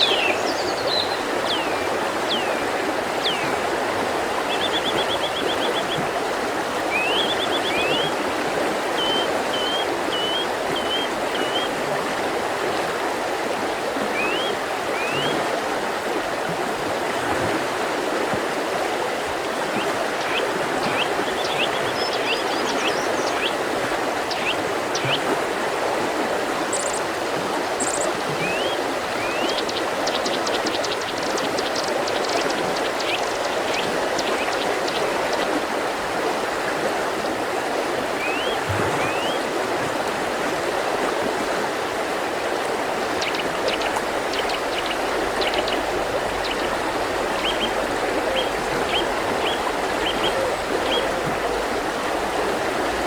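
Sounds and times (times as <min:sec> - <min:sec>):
songbirds calling: 0:00.0 - 0:11.8, 0:14.1 - 0:15.4, 0:19.7 - 0:25.5, 0:26.5 - 0:39.6, 0:42.7 - 0:53.0
river flowing: 0:00.0 - 0:53.0.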